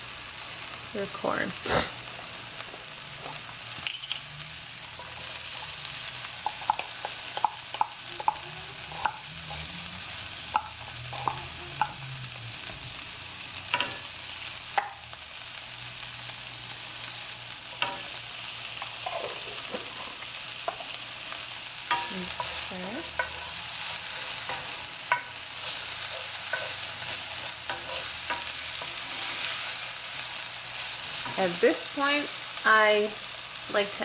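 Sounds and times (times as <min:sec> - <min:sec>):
vegetables sizzling in oil: 0:00.0 - 0:34.0
utensil scraping a pan: 0:21.9 - 0:29.8.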